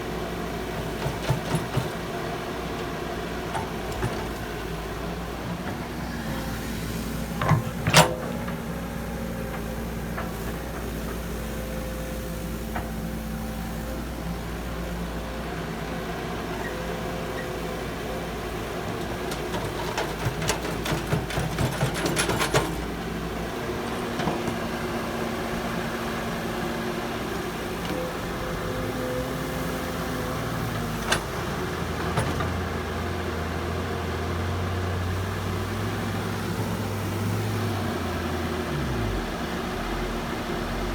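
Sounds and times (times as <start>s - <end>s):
heavy machinery engines running: 0.0s - 40.9s
clanking and clatter: 19.2s - 22.9s.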